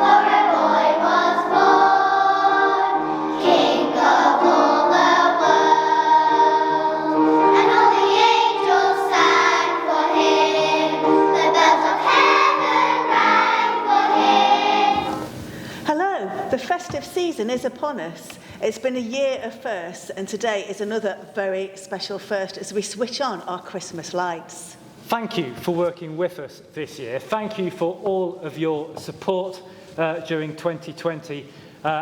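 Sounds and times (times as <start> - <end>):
children's choir singing: 0.0 - 15.4.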